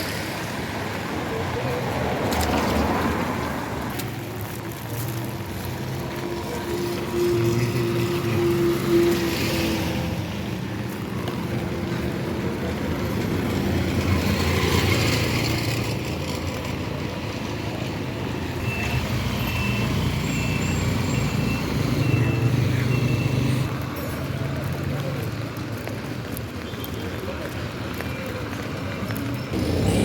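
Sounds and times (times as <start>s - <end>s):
road noise: 0.0s - 30.0s
vehicle engine drone: 29.5s - 30.0s.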